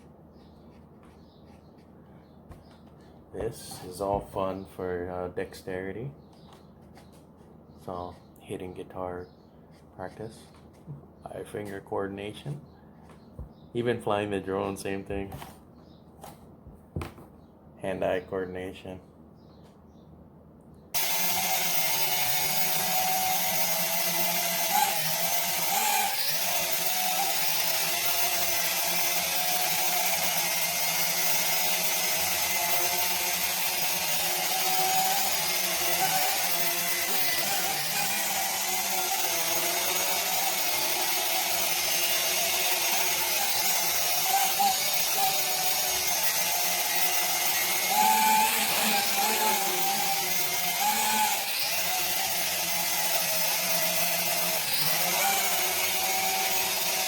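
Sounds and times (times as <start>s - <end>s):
quadcopter drone buzzing: 21.0s - 57.0s.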